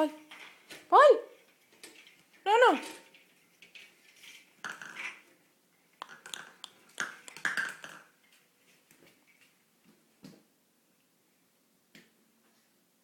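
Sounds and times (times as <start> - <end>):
baby mouth clicking and smacking: 6.0 - 7.9.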